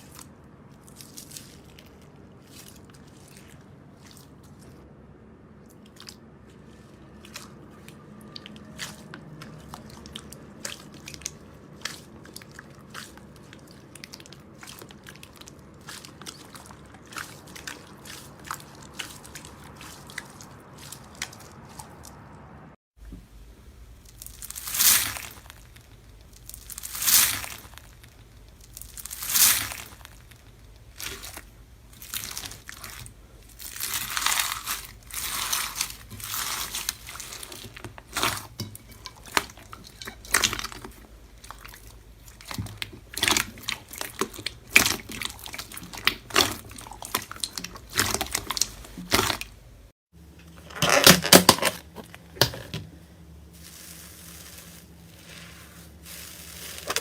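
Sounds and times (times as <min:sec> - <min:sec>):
slime squishing: 0:00.0 - 0:49.9, 0:53.5 - 0:57.0
slime crackling and popping: 0:24.0 - 0:49.6, 0:53.6 - 0:57.0.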